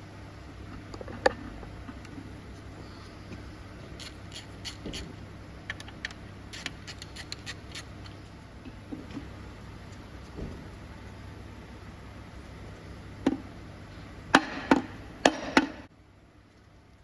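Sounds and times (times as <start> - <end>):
steady low hum: 0.0 - 17.0
metallic clicks and scrapes of tools: 4.0 - 5.1, 5.7 - 8.2.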